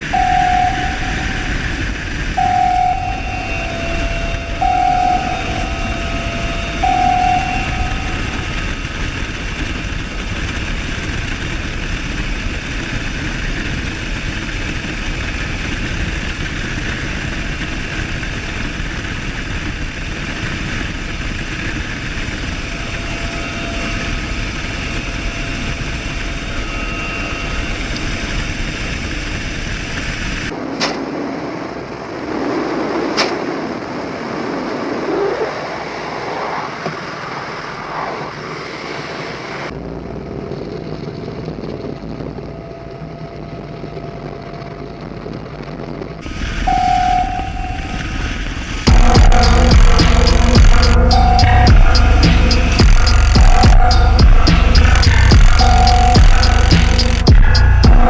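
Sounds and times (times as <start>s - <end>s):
pitched tone: 0.0s - 9.0s, 46.6s - 58.0s
loud mechanical drone: 0.0s - 58.0s.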